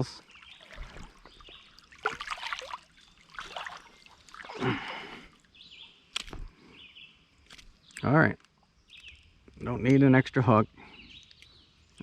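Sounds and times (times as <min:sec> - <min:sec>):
water splashing and trickling: 0:00.0 - 0:06.6, 0:08.8 - 0:10.1.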